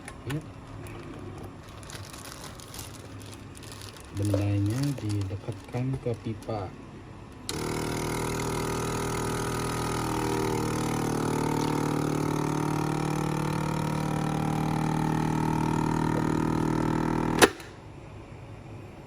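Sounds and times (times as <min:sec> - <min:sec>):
vacuum pump running: 0:00.0 - 0:19.0
vacuum sealer click: 0:07.4 - 0:17.8.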